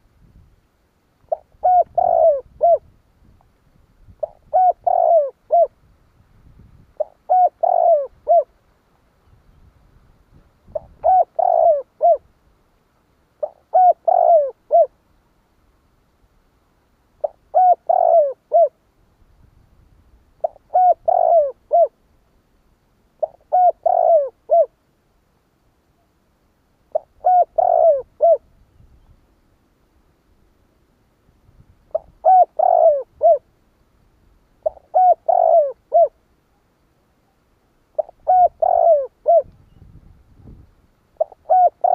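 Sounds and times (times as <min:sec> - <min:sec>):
dove cooing: 0:01.3 - 0:02.9, 0:04.2 - 0:05.8, 0:07.0 - 0:08.6, 0:10.7 - 0:12.3, 0:13.4 - 0:15.0, 0:17.2 - 0:18.8, 0:20.4 - 0:22.0, 0:23.2 - 0:24.8, 0:26.9 - 0:28.5, 0:31.9 - 0:33.5, 0:34.6 - 0:36.2, 0:38.0 - 0:39.7, 0:41.2 - 0:41.9.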